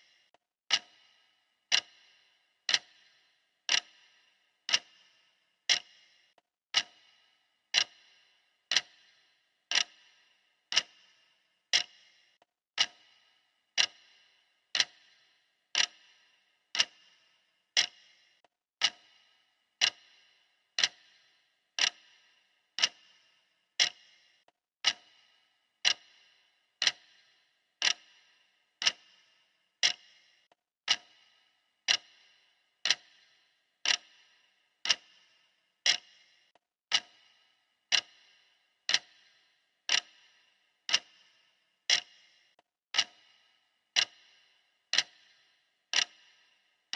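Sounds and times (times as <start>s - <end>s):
clock ticking: 0.0s - 46.6s.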